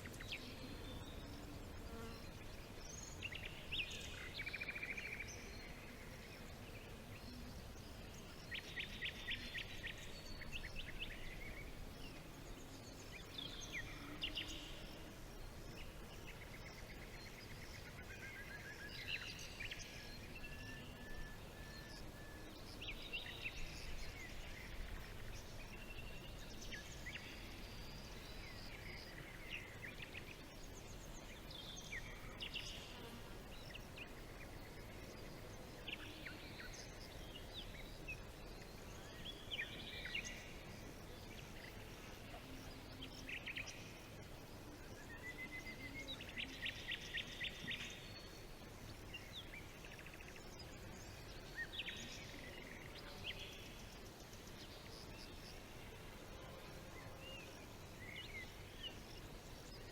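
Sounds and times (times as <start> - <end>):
steady background hiss: 0.0 - 59.9.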